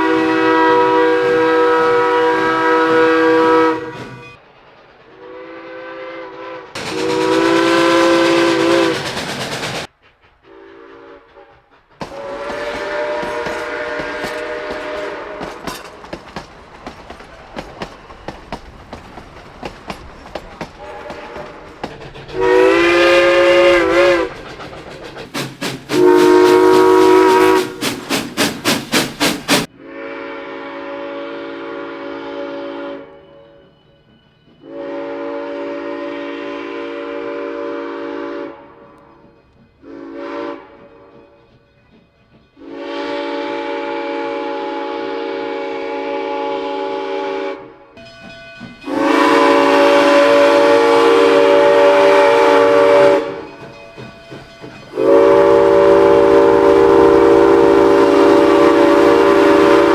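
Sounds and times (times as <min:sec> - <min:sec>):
locomotive horn blasts: 0:00.0 - 0:04.4, 0:05.2 - 0:09.0, 0:12.1 - 0:15.8, 0:20.8 - 0:21.6, 0:22.4 - 0:24.3, 0:26.0 - 0:27.9, 0:29.7 - 0:33.3, 0:34.6 - 0:39.0, 0:39.8 - 0:41.1, 0:42.6 - 0:47.8, 0:48.8 - 0:53.5, 0:54.9 - 0:59.9
train wheels clicking over rail joints: 0:03.8 - 0:29.7, 0:38.8 - 0:43.3, 0:47.9 - 0:59.9.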